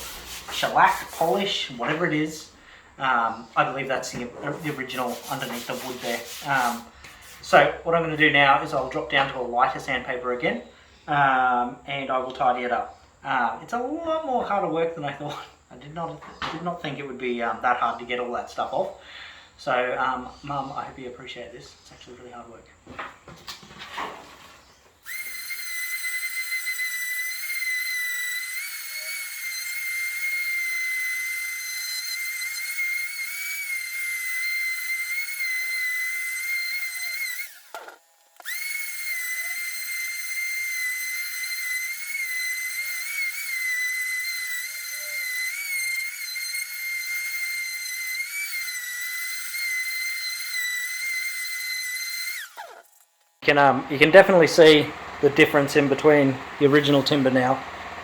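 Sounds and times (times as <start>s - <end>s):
orbital sander whining: 0.0s - 9.1s, 25.0s - 58.0s.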